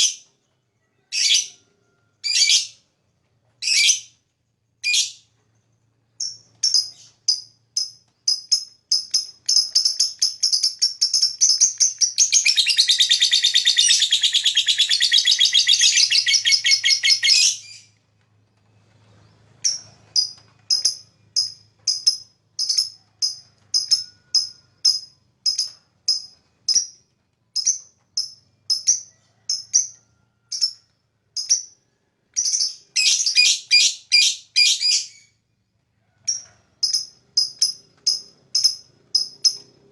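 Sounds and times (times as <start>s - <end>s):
lovebird chirping and trilling: 1.1s - 1.6s, 2.2s - 2.8s, 3.6s - 4.2s, 4.8s - 5.3s, 6.2s - 18.0s, 27.6s - 30.8s, 32.4s - 35.4s.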